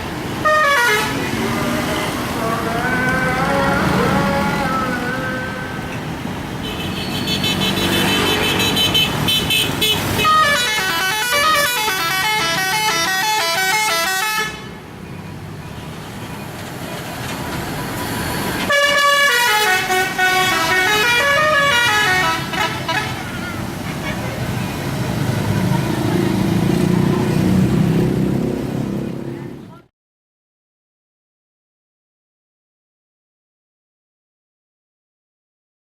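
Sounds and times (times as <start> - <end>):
vehicle noise: 0.0 - 29.9
multi-trumpet air horn tune: 0.4 - 1.3, 6.8 - 14.7, 18.7 - 23.2
steady horn tone: 0.4 - 2.3, 6.6 - 14.8, 18.7 - 24.4.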